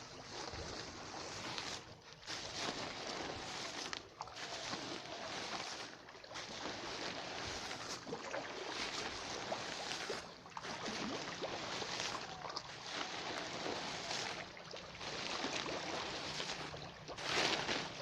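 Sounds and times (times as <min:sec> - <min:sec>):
water splashing in a pond: 0:00.0 - 0:18.0.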